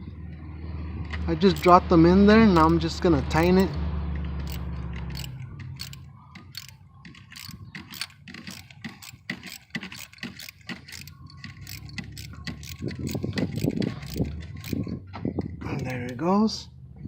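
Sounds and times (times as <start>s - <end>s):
socket ratchet clicking: 1.5s - 1.8s, 4.4s - 14.9s.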